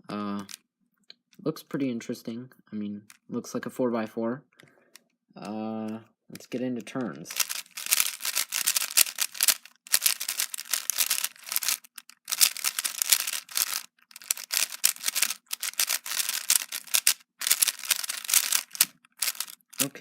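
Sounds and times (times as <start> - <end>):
plastic puzzle cube clicking: 0.4 - 0.6, 4.9 - 20.0.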